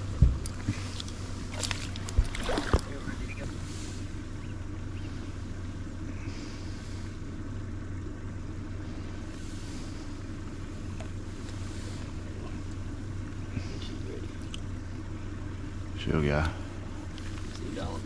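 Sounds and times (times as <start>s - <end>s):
boat motor droning: 0.0s - 18.0s
soft hissing: 2.4s - 15.9s, 16.5s - 18.0s.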